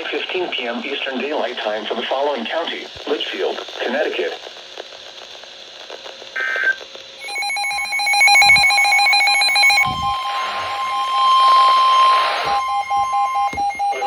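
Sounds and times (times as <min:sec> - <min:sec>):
buzzing digital header bursts: 0:07.2 - 0:14.0
steady high alert tone: 0:07.2 - 0:14.0.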